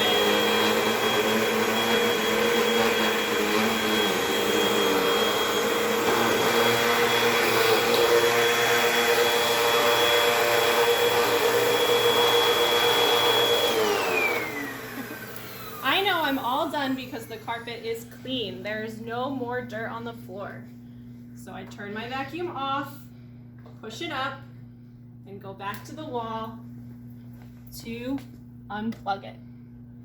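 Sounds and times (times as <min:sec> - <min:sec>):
vacuum cleaner running: 0:00.0 - 0:20.7.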